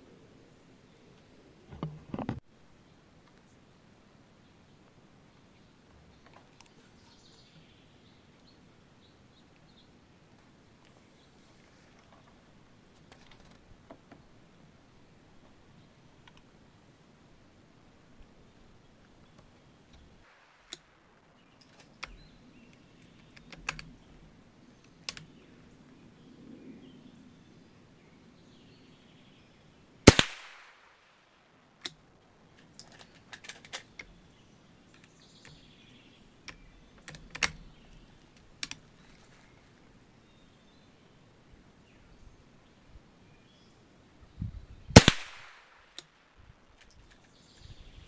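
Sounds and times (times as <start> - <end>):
rifle handling clicks: 20.6 - 20.9, 32.6 - 34.1
rifle shot with echo: 30.1 - 31.2, 45.0 - 46.0.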